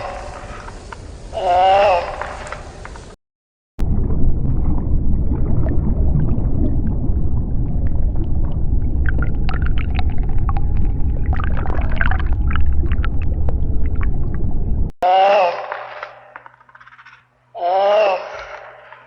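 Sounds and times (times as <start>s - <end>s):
heavy low rumble: 3.8s - 15.0s.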